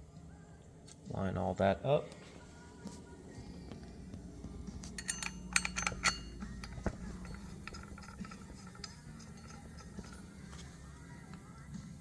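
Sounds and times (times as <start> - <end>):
metal parts clinking: 4.8 - 10.7.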